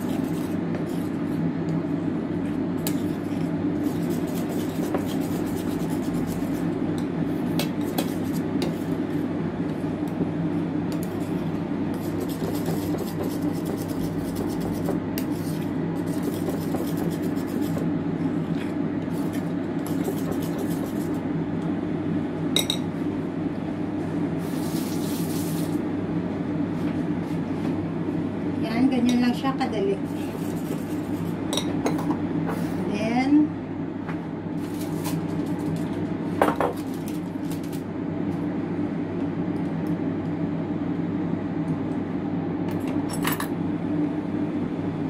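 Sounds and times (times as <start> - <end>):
utensil scraping mixing bowl: 0.0 - 1.4, 2.8 - 6.8, 7.4 - 9.0, 11.0 - 17.9, 18.6 - 21.2, 30.1 - 31.4.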